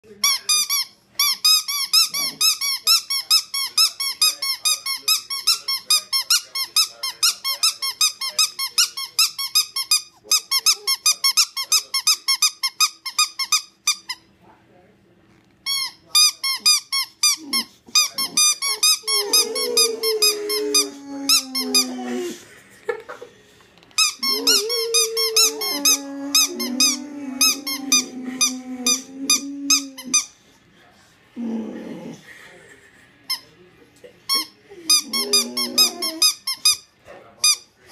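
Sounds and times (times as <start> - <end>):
rubber squeaky toy squeaking: 0.2 - 14.3, 15.6 - 21.9, 24.0 - 30.3, 34.3 - 37.7
dogs making wavering vocal sounds: 17.3 - 22.5, 24.0 - 30.3, 34.7 - 36.4.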